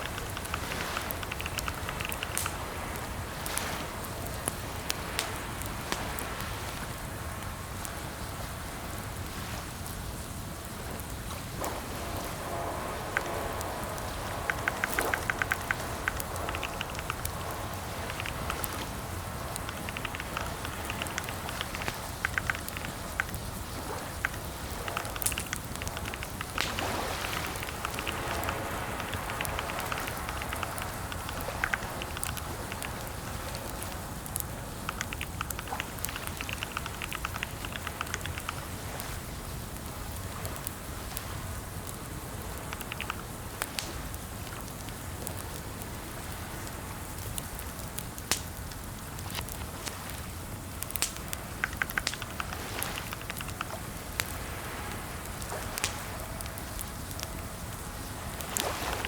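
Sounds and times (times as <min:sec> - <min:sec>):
keyboard typing clicks: 0:00.0 - 0:02.6, 0:14.2 - 0:23.4, 0:24.0 - 0:34.0, 0:34.8 - 0:38.6, 0:42.6 - 0:43.3
steady background hiss: 0:00.0 - 0:59.0.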